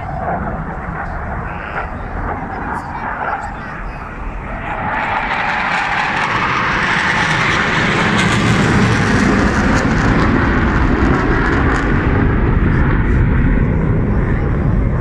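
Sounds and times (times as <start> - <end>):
aircraft passing overhead: 0.0 - 15.0.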